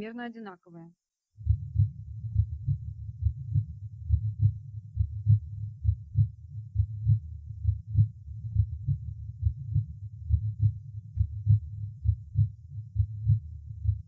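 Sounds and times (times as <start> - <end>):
low background hum: 0.0 - 14.0
heartbeat through stethoscope: 1.4 - 14.0.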